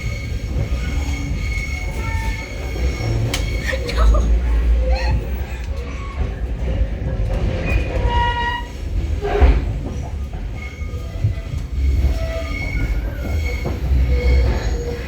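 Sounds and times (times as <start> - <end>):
high-pitched wheel squeal: 0.0 - 3.8
train rumbling along rails: 0.0 - 15.0.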